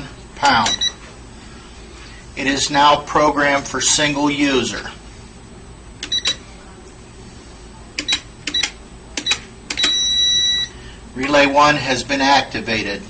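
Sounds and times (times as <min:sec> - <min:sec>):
long steady beep: 0:00.4 - 0:01.1, 0:05.8 - 0:06.5, 0:08.0 - 0:11.0
keypad button clicks: 0:08.0 - 0:10.0.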